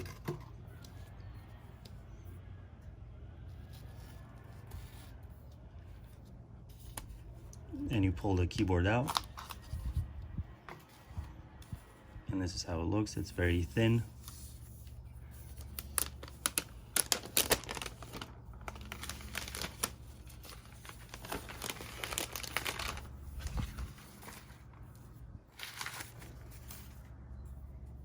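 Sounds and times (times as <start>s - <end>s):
steady low hum: 0.0s - 28.0s
packaging wrap crinkling and tearing: 15.6s - 24.7s, 25.6s - 27.0s.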